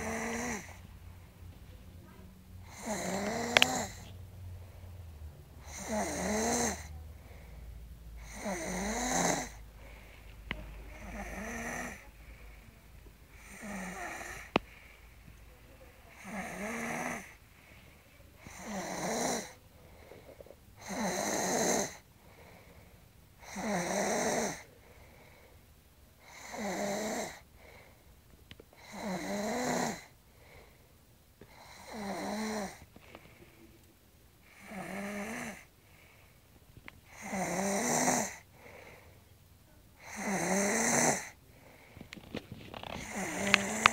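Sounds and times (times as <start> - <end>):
heavy snoring: 0.0 - 0.8, 2.6 - 4.2, 5.6 - 7.4, 8.2 - 14.9, 16.1 - 17.4, 18.4 - 22.6, 23.4 - 24.7, 26.2 - 27.8, 28.8 - 30.1, 31.5 - 32.8, 34.4 - 35.7, 37.1 - 39.0, 40.0 - 41.4, 42.8 - 43.9.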